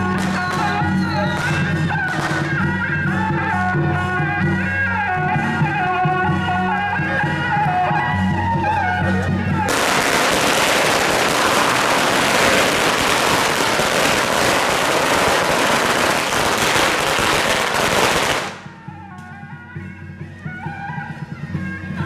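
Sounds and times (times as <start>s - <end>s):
firecrackers crackling: 0.0s - 2.8s, 9.7s - 18.8s
wind-band music: 0.0s - 22.0s.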